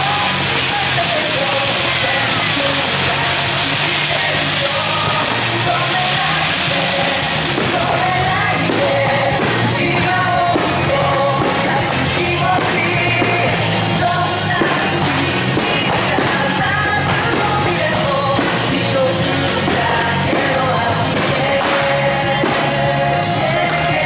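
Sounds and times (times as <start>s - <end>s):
rock song with vocals: 0.0s - 24.0s
sharp hits: 5.1s - 24.0s.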